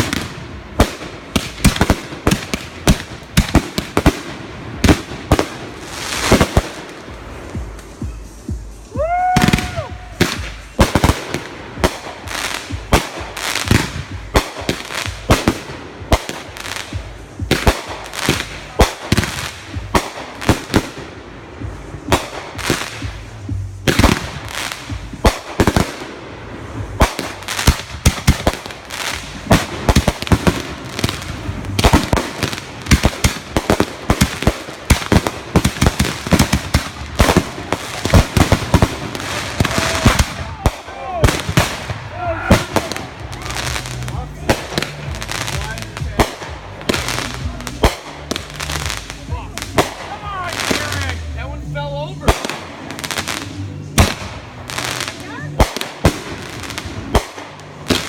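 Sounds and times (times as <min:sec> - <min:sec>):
fireworks bangs and crackles: 0:00.0 - 0:58.0
firework whistle: 0:08.1 - 0:11.3.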